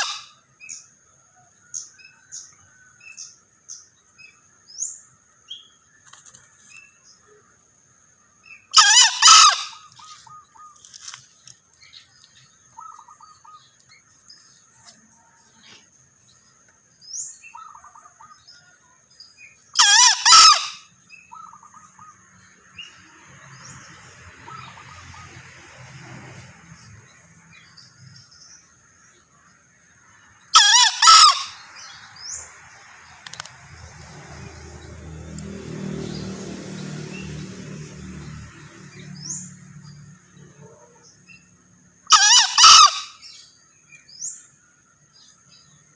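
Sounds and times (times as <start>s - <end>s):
junglefowl crowing: 0.0s - 0.4s, 8.7s - 11.1s, 17.4s - 19.0s, 19.8s - 22.2s, 30.5s - 32.0s, 42.1s - 43.4s
small birds chirping: 0.0s - 25.4s, 26.4s - 42.1s.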